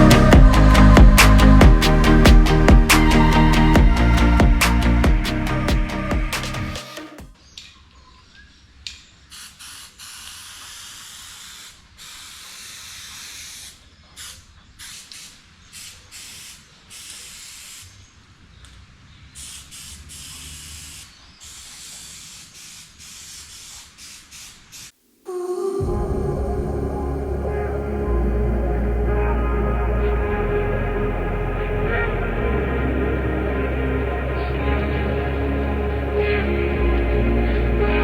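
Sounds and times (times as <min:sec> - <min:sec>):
aerosol spray can hissing: 0:09.4 - 0:13.7, 0:14.8 - 0:17.9, 0:19.4 - 0:24.9.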